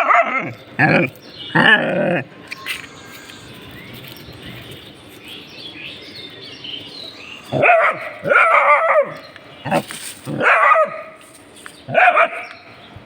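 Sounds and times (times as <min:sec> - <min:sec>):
dog barking in high yips: 0:07.5 - 0:09.2, 0:11.9 - 0:12.6.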